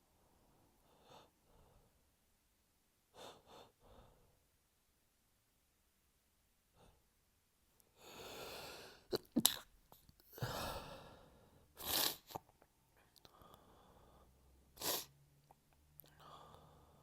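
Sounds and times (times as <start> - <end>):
person sneezing: 11.8 - 12.5.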